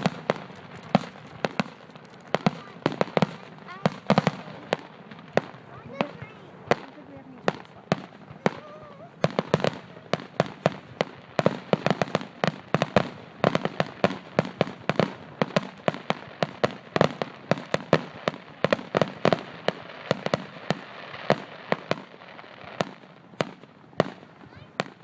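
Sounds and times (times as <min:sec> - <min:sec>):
fireworks bursting in rapid volleys: 0:00.0 - 0:25.0.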